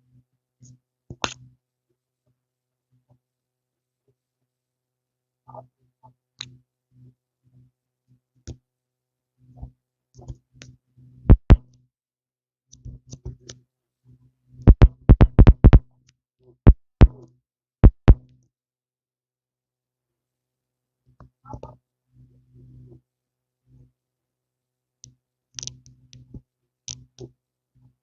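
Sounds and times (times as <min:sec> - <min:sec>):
sharp clicks and taps: 0:11.3 - 0:11.6, 0:14.7 - 0:15.8, 0:16.7 - 0:17.2, 0:17.8 - 0:18.2.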